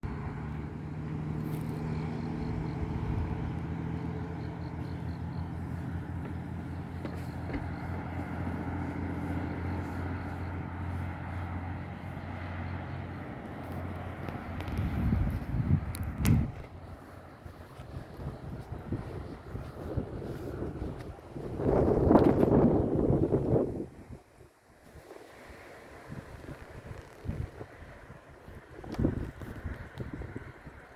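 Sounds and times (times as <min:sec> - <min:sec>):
traffic engine drone: 0:00.0 - 0:24.0.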